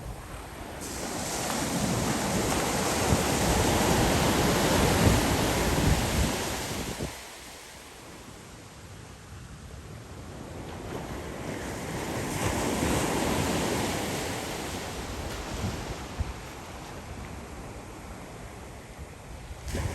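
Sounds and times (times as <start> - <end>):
wind buffeting microphone: 0.0 - 7.3, 19.1 - 19.9
wave breaking on beach: 0.0 - 7.8.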